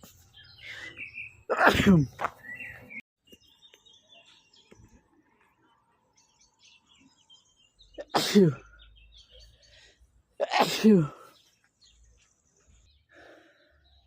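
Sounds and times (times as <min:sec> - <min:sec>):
breathing: 0:00.6 - 0:01.1, 0:09.5 - 0:10.3, 0:12.9 - 0:14.0
man sneezing: 0:01.5 - 0:02.2, 0:10.4 - 0:11.2.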